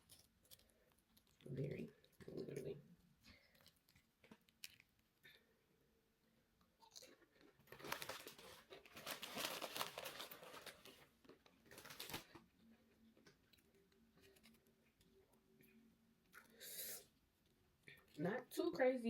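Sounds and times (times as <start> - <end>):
person chewing: 0.0 - 5.5, 6.6 - 8.9.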